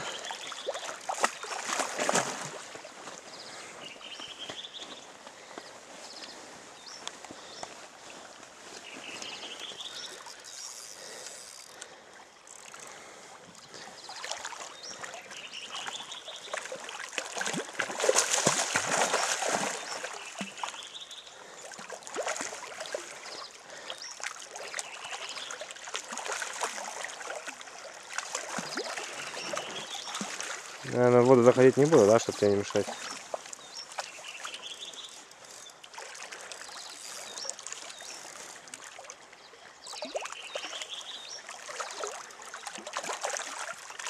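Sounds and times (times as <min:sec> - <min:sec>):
river water rippling: 0:00.0 - 0:44.0.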